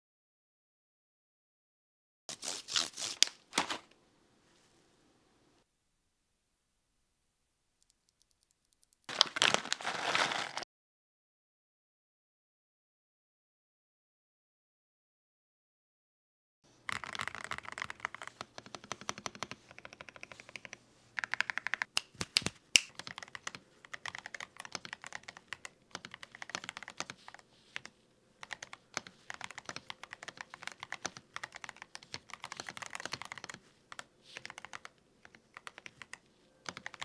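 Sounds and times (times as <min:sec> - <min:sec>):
mechanical keyboard typing: 0:07.8 - 0:09.1, 0:16.9 - 0:37.0.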